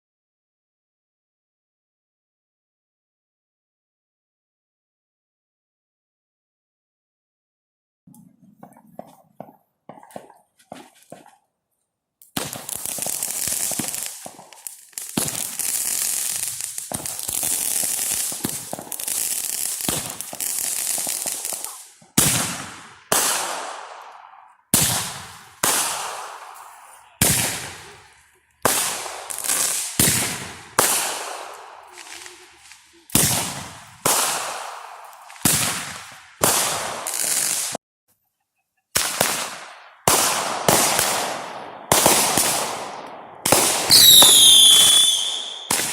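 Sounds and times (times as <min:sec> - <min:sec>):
fireworks crackling: 0:12.2 - 0:37.8, 0:39.0 - 0:45.9
firework bangs: 0:12.3 - 0:37.8, 0:39.0 - 0:45.9.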